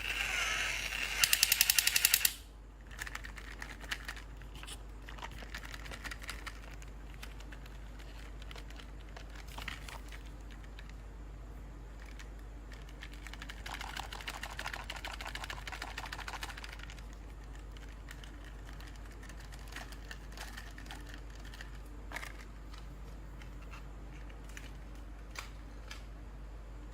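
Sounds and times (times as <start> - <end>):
plastic toys clicking and tapping: 1.2 - 11.0, 11.9 - 26.1.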